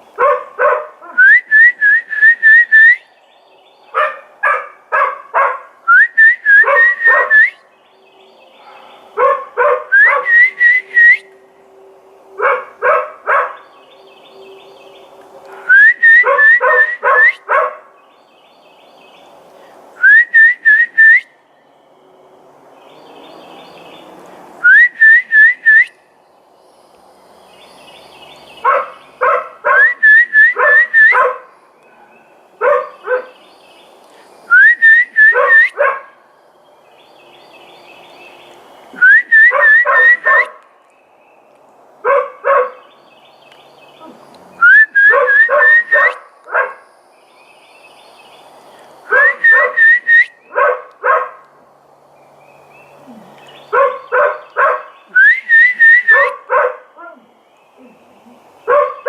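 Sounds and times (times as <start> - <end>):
dog barking: 0.2 - 1.2, 3.9 - 5.8, 6.6 - 7.4, 8.6 - 10.3, 12.4 - 13.6, 15.5 - 17.9, 28.6 - 29.9, 30.6 - 33.4, 35.3 - 36.2, 39.5 - 40.6, 42.0 - 42.9, 45.1 - 46.8, 49.1 - 49.8, 50.5 - 51.4, 53.7 - 55.0, 56.1 - 57.3, 58.7 - 59.0
person whistling: 1.2 - 3.0, 5.9 - 7.6, 9.9 - 11.3, 15.7 - 17.4, 20.0 - 21.2, 24.6 - 25.9, 29.8 - 31.2, 34.5 - 35.8, 39.0 - 40.3, 44.6 - 46.0, 49.2 - 50.3, 55.2 - 56.2.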